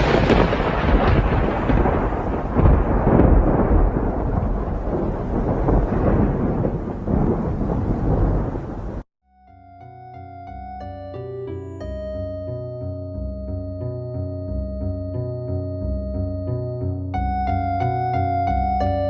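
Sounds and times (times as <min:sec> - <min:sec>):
loud rumbling noise with crackle: 0:00.0 - 0:09.0.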